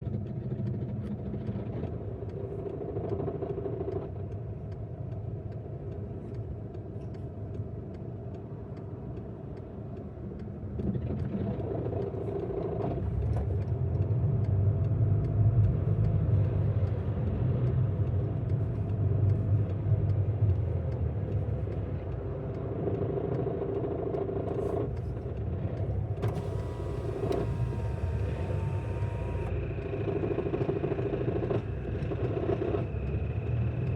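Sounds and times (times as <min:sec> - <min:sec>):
diesel engine rattling: 0:11.1 - 0:33.9.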